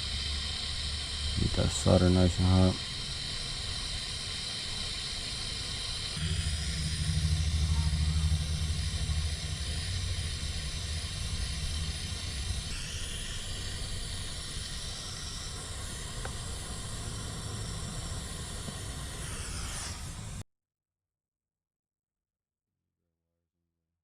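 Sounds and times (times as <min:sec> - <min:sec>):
soldering gun humming: 0:00.0 - 0:20.4
steady hiss: 0:00.0 - 0:20.4.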